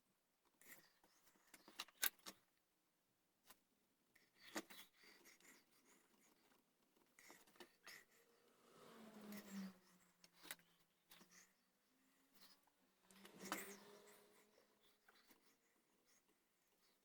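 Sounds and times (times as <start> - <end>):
scraping on wood: 13.0 - 14.8.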